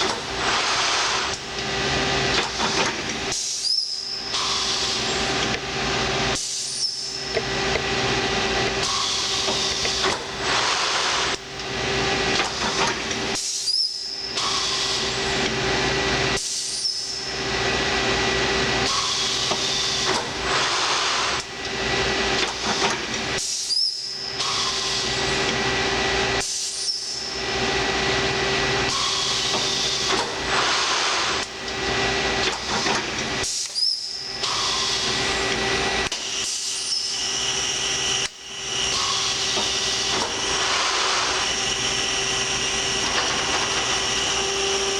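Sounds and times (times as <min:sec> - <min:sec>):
machine hum: 0:34.2 - 0:44.9.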